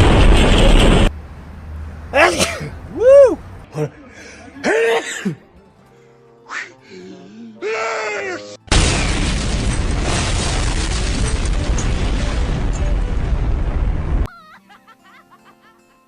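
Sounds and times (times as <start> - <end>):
explosion blast with deep rumble: 0.0 - 1.1, 8.7 - 14.3.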